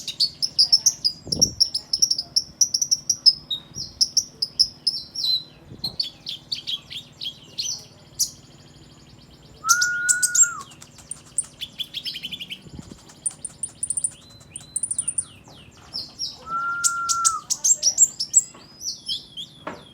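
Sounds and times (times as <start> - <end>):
sunbird chirps and twitters: 0.0 - 19.9
long level bird whistle: 9.6 - 12.6, 16.2 - 19.6.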